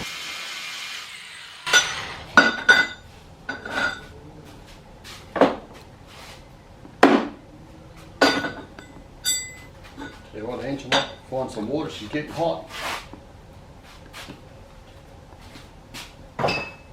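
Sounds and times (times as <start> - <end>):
steel pieces clanking: 1.6 - 4.1.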